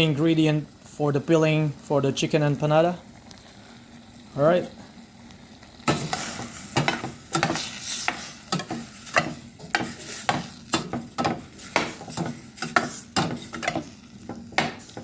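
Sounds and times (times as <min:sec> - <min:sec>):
food sizzling in a pan: 0:00.0 - 0:15.0
utensil scraping and knocking pan: 0:05.9 - 0:15.0.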